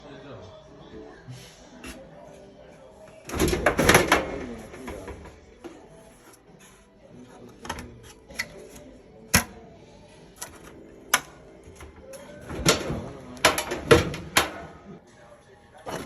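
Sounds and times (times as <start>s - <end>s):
clothes dryer humming: 7.6s - 15.0s.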